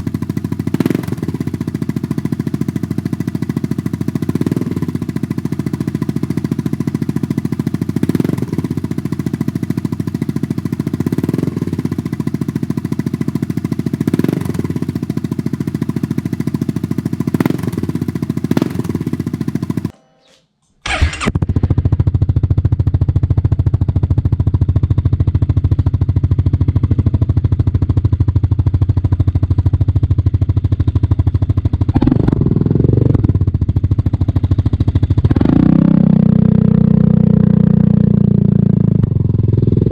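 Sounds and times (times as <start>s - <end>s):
scooter engine idling: 0.0s - 20.0s, 20.9s - 39.9s.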